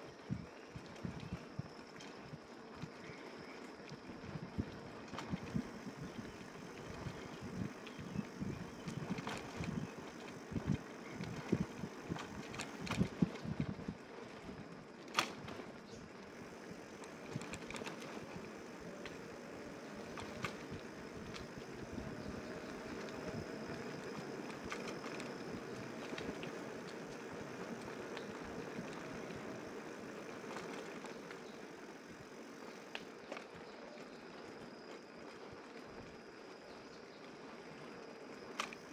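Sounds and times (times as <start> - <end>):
bicycle tyre rolling noise: 0.0 - 38.9
bicycle thumps and rattles: 4.5 - 15.7, 16.3 - 31.6.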